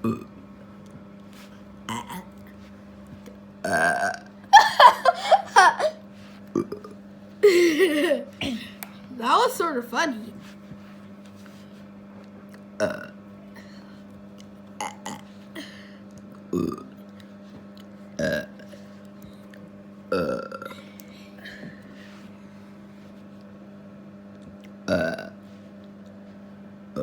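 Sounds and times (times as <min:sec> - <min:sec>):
person burping: 0:00.0 - 0:00.4, 0:01.9 - 0:02.3, 0:03.6 - 0:05.7, 0:06.5 - 0:08.7, 0:12.8 - 0:13.2, 0:14.8 - 0:15.9, 0:16.5 - 0:17.0, 0:18.2 - 0:18.8, 0:20.1 - 0:20.8, 0:24.8 - 0:25.4
steady low hum: 0:00.0 - 0:27.0.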